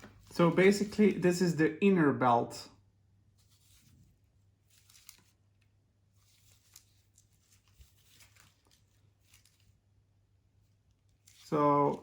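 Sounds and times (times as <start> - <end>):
packaging rustling and crinkling: 3.4 - 9.8, 10.9 - 12.0.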